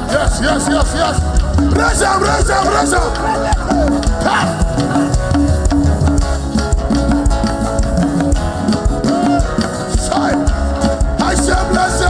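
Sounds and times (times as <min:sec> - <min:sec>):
people chanting: 0:00.0 - 0:05.6, 0:09.1 - 0:12.0
drums and bass beat: 0:00.0 - 0:12.0
live band up-tempo groove: 0:00.0 - 0:12.0.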